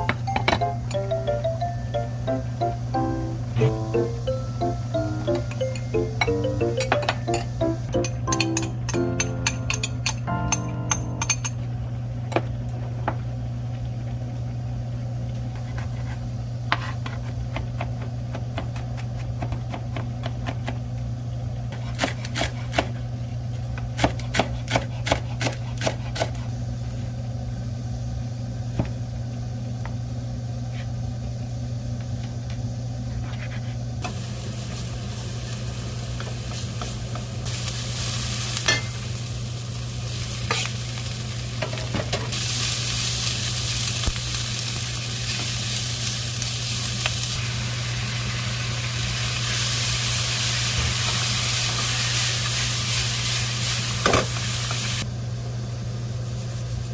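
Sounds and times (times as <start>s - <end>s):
food sizzling in frying pan: 34.0s - 55.1s.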